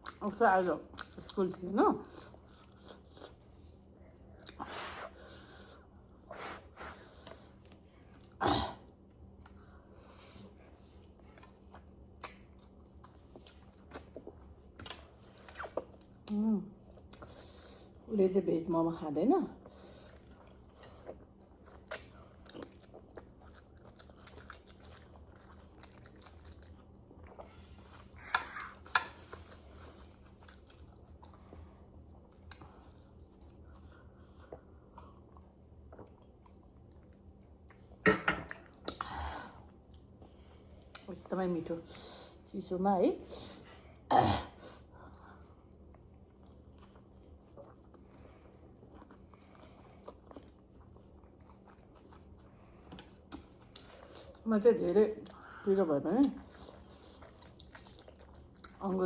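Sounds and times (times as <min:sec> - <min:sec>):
chewing and biting: 0:20.0 - 0:39.0, 0:45.1 - 0:54.4, 0:56.3 - 0:59.0.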